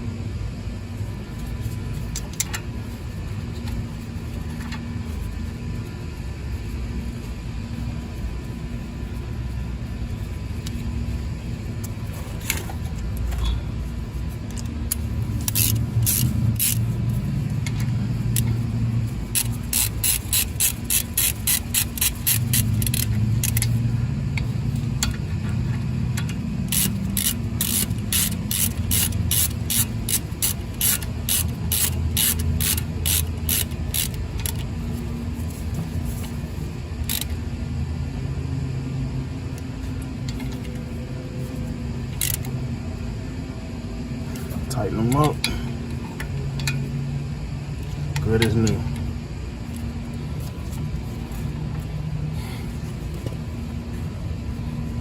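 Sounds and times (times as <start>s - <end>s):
low steady rumble: 0.0s - 55.0s
socket ratchet clicking: 14.5s - 23.8s, 26.2s - 34.7s, 37.0s - 37.4s, 42.1s - 42.6s.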